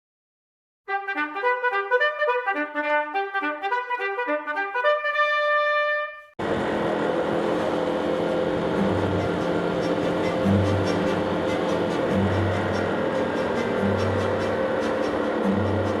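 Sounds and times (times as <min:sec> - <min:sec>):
brass intro jingle: 0:00.9 - 0:06.3
loud rushing noise: 0:06.4 - 0:16.0
low hum: 0:06.4 - 0:16.0.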